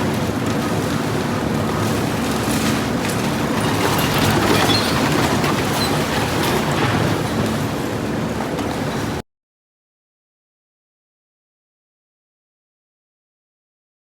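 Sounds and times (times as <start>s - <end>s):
moving vehicle rumbling: 1.0s - 9.2s.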